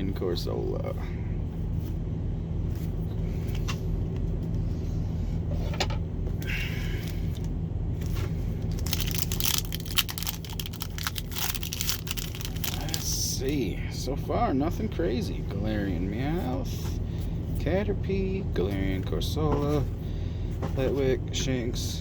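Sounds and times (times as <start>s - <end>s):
cards shuffled in hands: 8.0s - 13.2s
foil pack tearing and crinkling: 8.6s - 13.4s.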